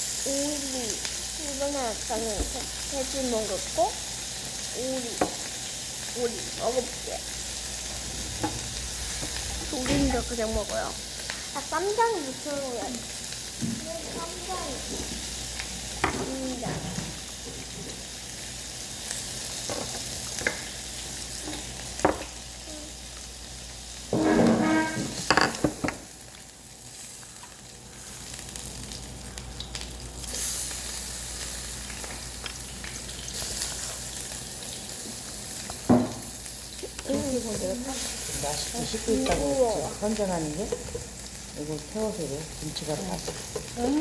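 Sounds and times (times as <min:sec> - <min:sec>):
meat sizzling on a grill: 0:00.0 - 0:44.0.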